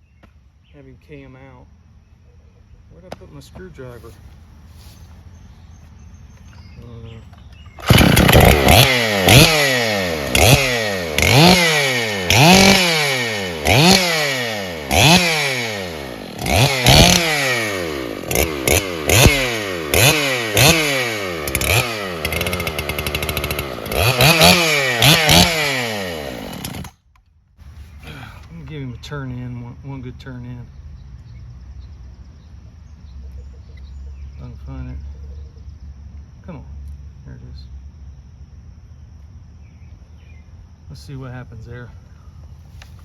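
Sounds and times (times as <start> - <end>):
chainsaw revving: 7.8 - 27.0.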